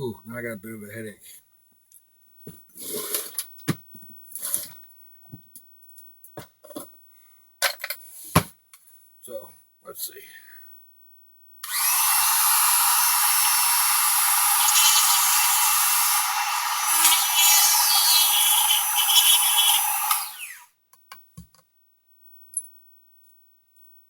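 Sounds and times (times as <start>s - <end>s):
rotary tool whining: 11.6s - 20.7s.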